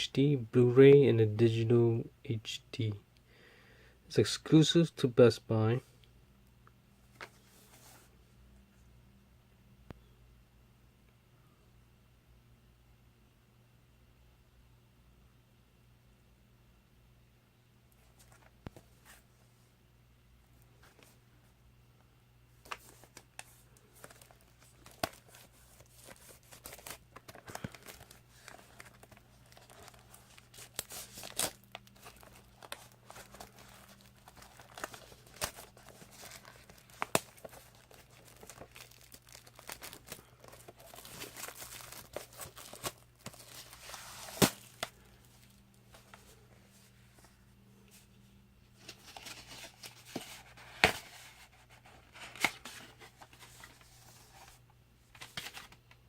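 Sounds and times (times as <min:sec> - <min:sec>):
faint steady hum: 0:00.0 - 0:56.0
plastic wrap crinkling and snapping: 0:22.7 - 0:45.7.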